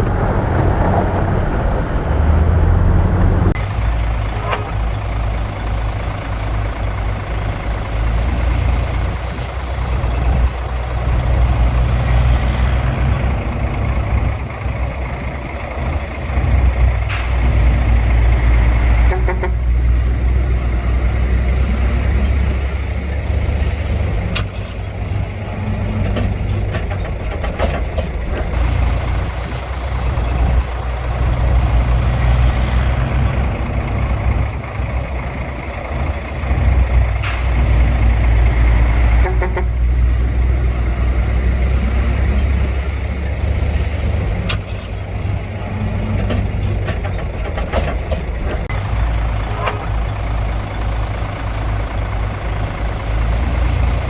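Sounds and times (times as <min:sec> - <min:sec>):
diesel engine rumble: 0:00.0 - 0:54.0.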